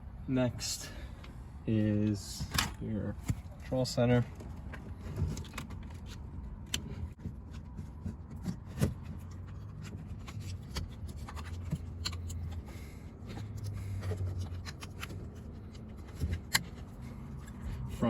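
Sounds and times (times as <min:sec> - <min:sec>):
plastic parts clicking and scraping: 0:04.3 - 0:17.9.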